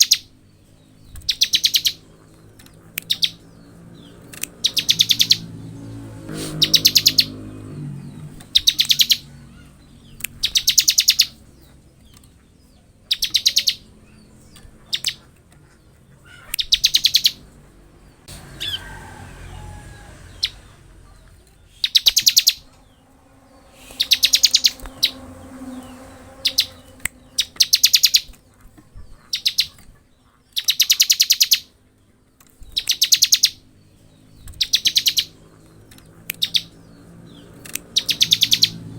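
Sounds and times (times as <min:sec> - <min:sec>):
bird high rapid trills: 0:03.1 - 0:09.8, 0:18.3 - 0:21.0, 0:21.6 - 0:28.5, 0:36.4 - 0:38.9.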